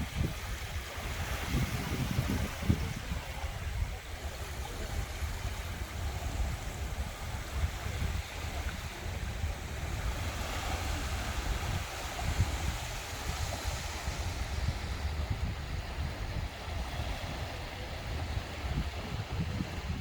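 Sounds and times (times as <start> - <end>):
surf washing onto beach: 0.0 - 20.0
wind rumble on microphone: 0.0 - 20.0.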